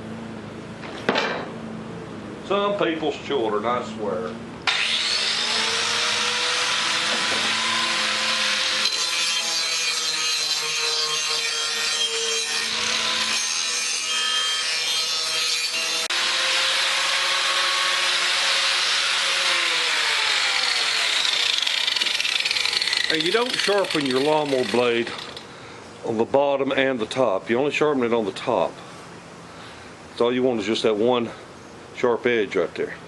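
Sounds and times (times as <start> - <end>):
angle grinder grinding steel blade: 4.7 - 25.5.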